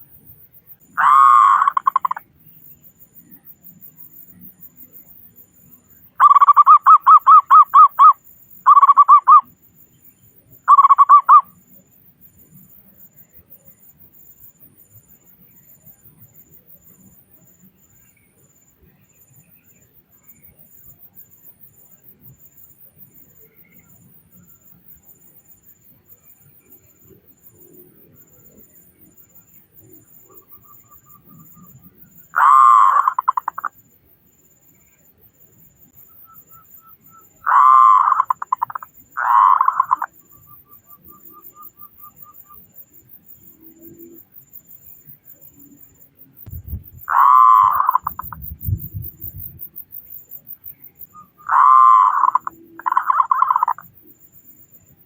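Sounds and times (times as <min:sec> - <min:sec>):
dove cooing: 0:01.0 - 0:02.2, 0:10.7 - 0:11.4, 0:32.4 - 0:33.7, 0:37.4 - 0:40.1, 0:47.1 - 0:48.4, 0:51.5 - 0:53.8.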